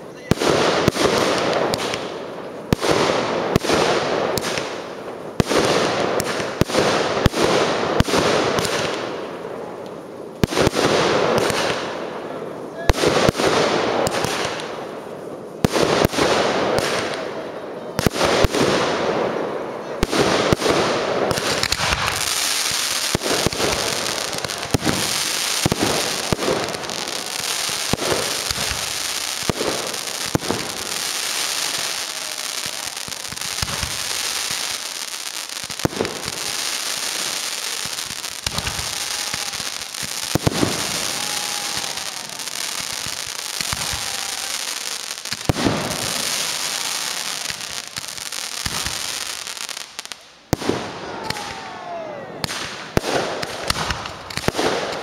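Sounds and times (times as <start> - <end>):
dense fireworks hiss: 0.0 - 55.0
scattered firework bangs: 20.0 - 51.7, 52.4 - 55.0.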